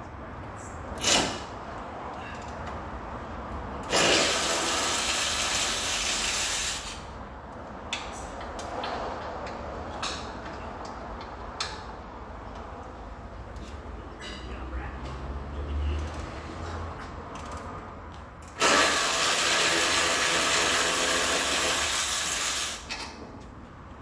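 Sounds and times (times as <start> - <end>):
tools clicking and knocking: 16.0 - 17.8
loud steady hiss: 18.6 - 22.9.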